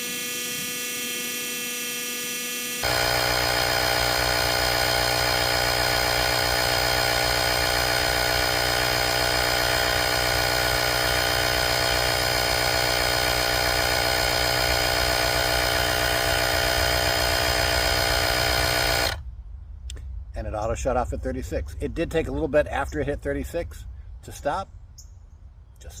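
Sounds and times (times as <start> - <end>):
tire inflator buzzing: 0.0 - 19.2.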